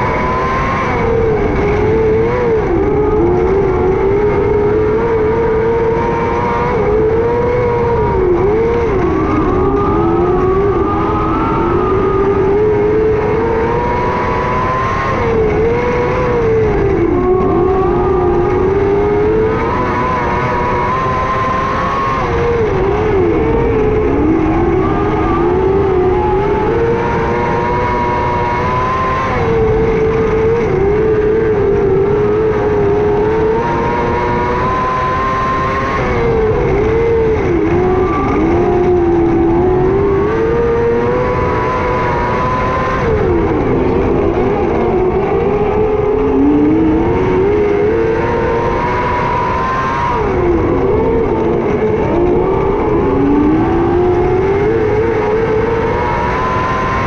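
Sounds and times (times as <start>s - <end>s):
racing car engine running hard: 0.0s - 57.0s.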